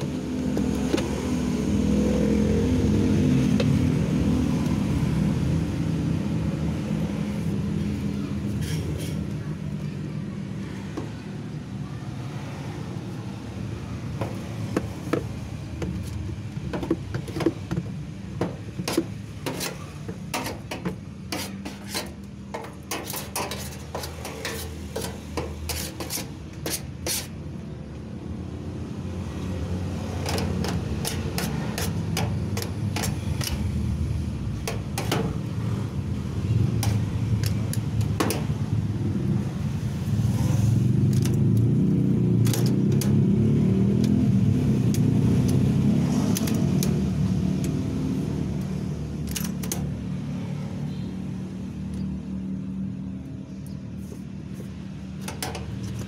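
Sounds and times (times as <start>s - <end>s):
scraping and tapping on metal: 8.5s - 9.4s, 14.2s - 27.4s, 30.2s - 33.8s, 34.6s - 35.6s, 36.6s - 38.6s, 55.2s - 56.0s.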